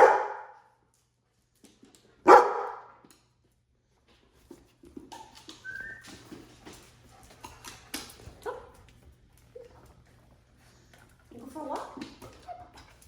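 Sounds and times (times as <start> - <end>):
dog barking: 0.0 - 0.6, 2.2 - 3.0
dog whining: 5.6 - 6.2.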